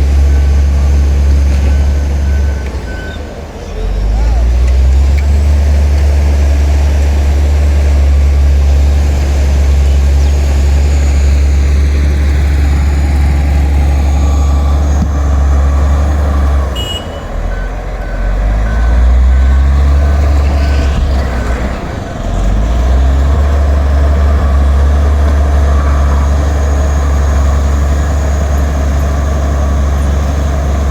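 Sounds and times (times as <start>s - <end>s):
diesel engine running: 0.0s - 30.9s
reverse warning beeper: 10.2s - 21.4s.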